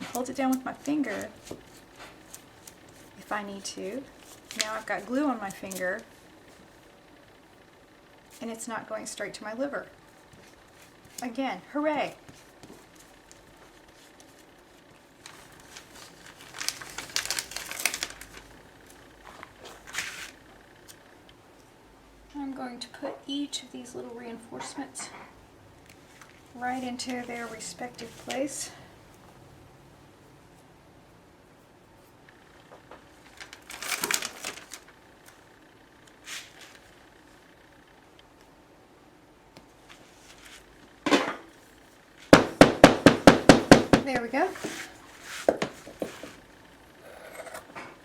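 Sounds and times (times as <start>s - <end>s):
hands tapping leather: 42.4s - 44.3s.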